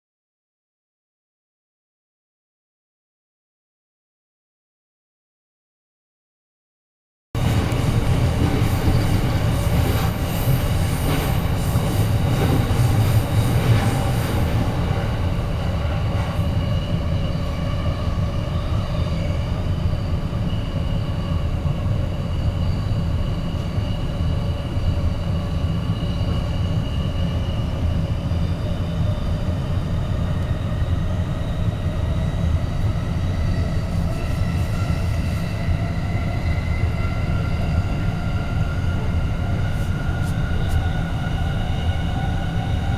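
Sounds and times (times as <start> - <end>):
train rumbling: 7.4 - 42.9.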